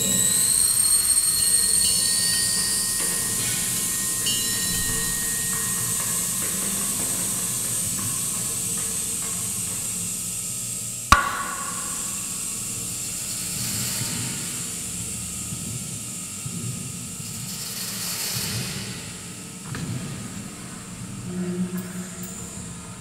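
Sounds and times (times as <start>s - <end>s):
sharp metallic clank: 11.1s - 12.6s.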